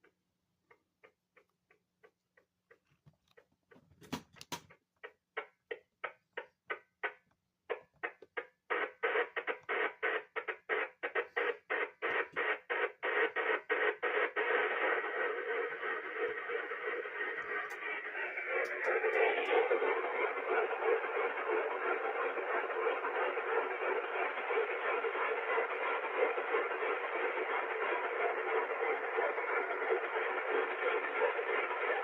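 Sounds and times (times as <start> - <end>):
radio signal ticking: 5.0 - 32.0
radio crackle: 5.4 - 32.0
radio hiss: 8.0 - 32.0.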